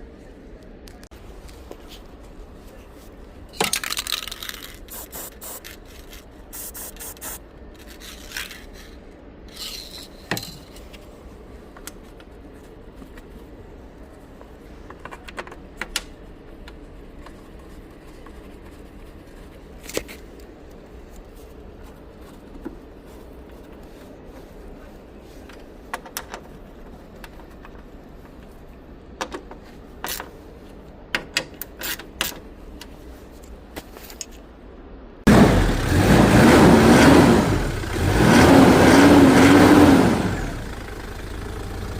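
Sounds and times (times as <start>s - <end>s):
car engine starting and revving: 35.3s - 41.9s.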